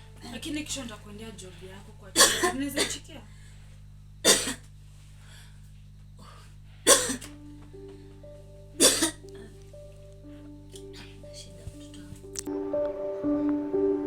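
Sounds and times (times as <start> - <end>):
soft music of held notes: 0.0 - 2.8, 6.8 - 14.0
person coughing loudly: 2.2 - 3.0, 4.2 - 4.6, 6.9 - 7.3, 8.8 - 9.3.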